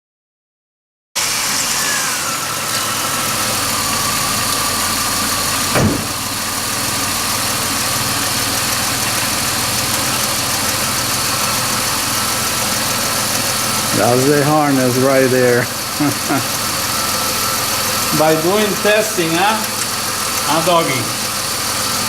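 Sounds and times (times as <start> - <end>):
car engine idling with whine: 1.2 - 22.0
sharp knock: 5.7 - 6.2.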